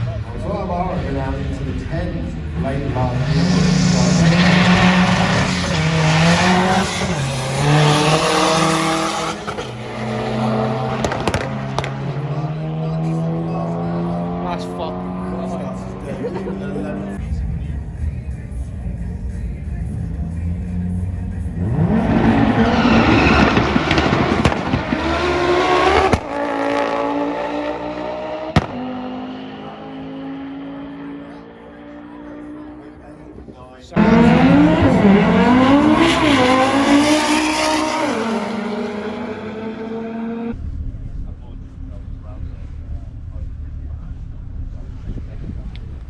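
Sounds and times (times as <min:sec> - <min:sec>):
car engine revving: 0:00.0 - 0:46.0
sharp bangs: 0:10.9 - 0:12.1, 0:23.0 - 0:26.8, 0:28.4 - 0:29.3.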